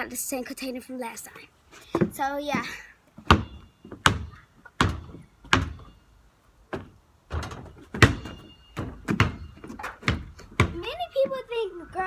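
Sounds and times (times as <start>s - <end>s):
basketball dribbling thuds: 1.9s - 6.0s, 6.7s - 11.6s.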